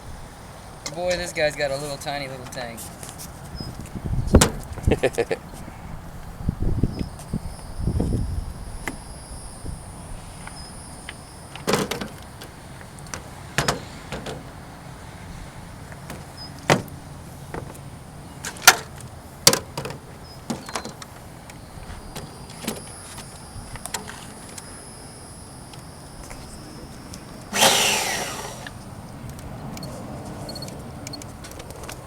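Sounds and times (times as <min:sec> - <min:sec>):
clicks and knocks from handling parts: 0:18.4 - 0:21.6.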